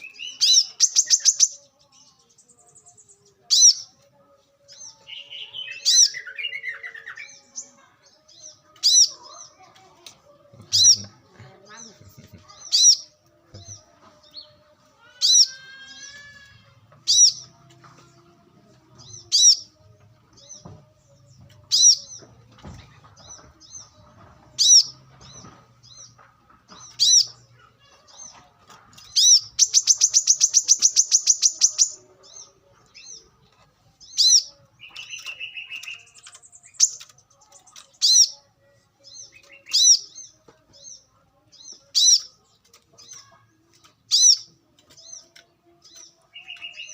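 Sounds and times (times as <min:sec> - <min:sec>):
bird trill: 0:00.0 - 0:03.9, 0:04.7 - 0:07.7, 0:13.7 - 0:17.5, 0:19.0 - 0:19.8, 0:21.6 - 0:22.2, 0:24.6 - 0:26.2, 0:26.8 - 0:28.4, 0:29.0 - 0:33.2, 0:34.0 - 0:38.4, 0:39.0 - 0:42.4, 0:44.1 - 0:46.9.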